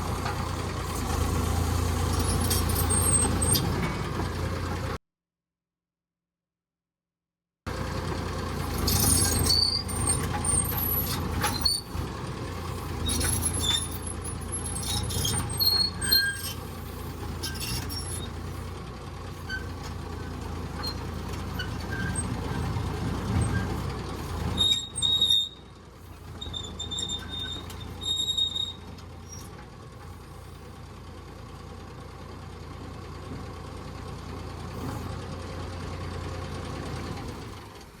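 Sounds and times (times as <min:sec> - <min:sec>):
pile driver engine running: 0:00.0 - 0:05.0, 0:07.7 - 0:38.0
metal clanks: 0:02.2 - 0:04.4
high squeals: 0:12.8 - 0:18.4, 0:24.5 - 0:25.6, 0:26.3 - 0:29.4.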